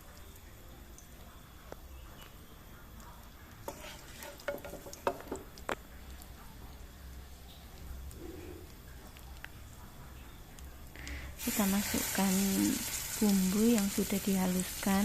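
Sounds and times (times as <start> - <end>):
oil sizzling in a pan: 3.5 - 7.7, 11.2 - 15.0
utensil scraping a pan: 3.6 - 5.0.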